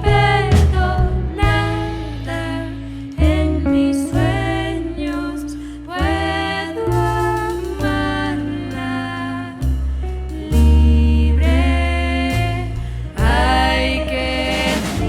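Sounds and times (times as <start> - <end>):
deep bass notes: 0.0 - 15.0
jazz-pop band music: 0.0 - 15.0
sliding melodic lead line: 0.0 - 15.0.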